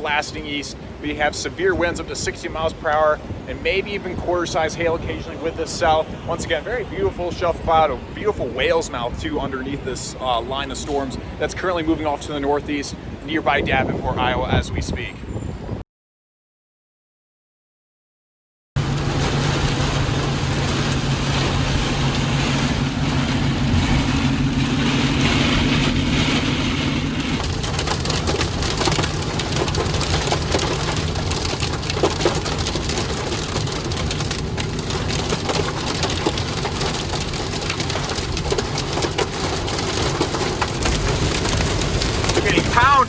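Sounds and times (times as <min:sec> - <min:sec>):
heavy rain on vehicle roof: 0:00.0 - 0:03.1, 0:18.8 - 0:43.0
low vehicle hum: 0:18.8 - 0:43.0.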